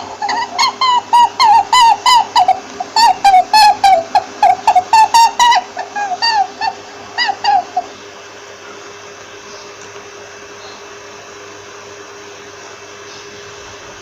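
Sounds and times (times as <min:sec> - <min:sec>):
rabbit squeaking: 0:00.0 - 0:08.2
faint hum: 0:00.0 - 0:14.0.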